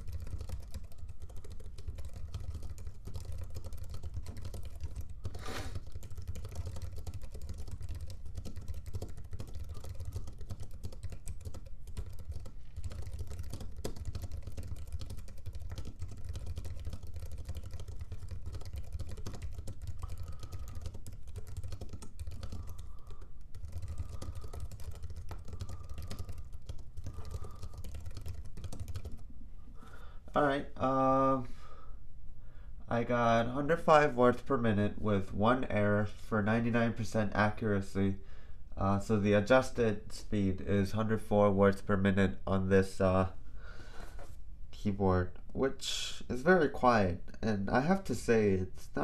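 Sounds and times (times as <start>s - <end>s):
fast typing key clicks: 0.0s - 29.2s.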